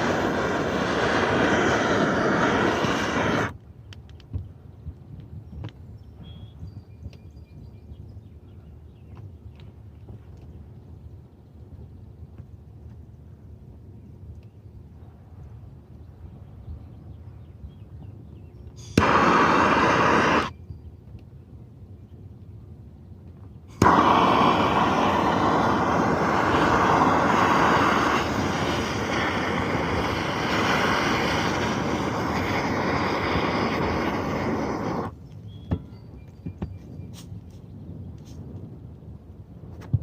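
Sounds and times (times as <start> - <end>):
gas torch flame roaring: 0.0 - 3.6, 18.8 - 20.5, 23.7 - 35.2.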